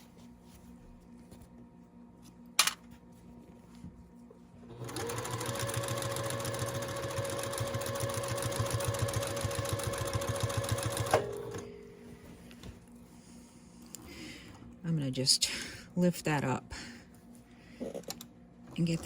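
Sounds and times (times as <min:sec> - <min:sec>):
sewing machine stitching: 0:04.7 - 0:11.6.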